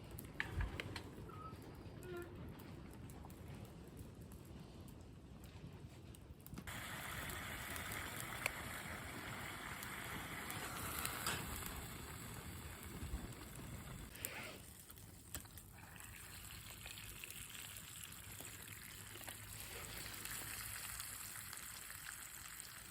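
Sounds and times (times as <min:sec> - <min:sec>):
campfire crackles: 0:00.0 - 0:22.9
meat sizzling: 0:06.7 - 0:22.9.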